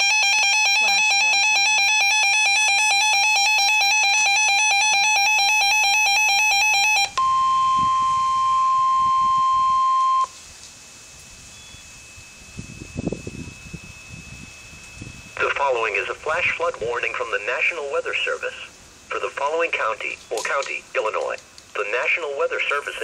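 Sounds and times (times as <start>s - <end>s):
pulsing buzzy electronic alarm: 0.0s - 17.6s
steady single-pitch warning tone: 0.0s - 18.1s
faint hiss: 10.2s - 23.0s.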